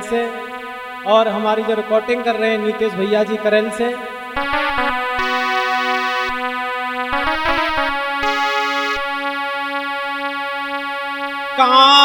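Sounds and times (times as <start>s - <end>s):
reedy keyboard melody with drone: 4.3s - 12.0s.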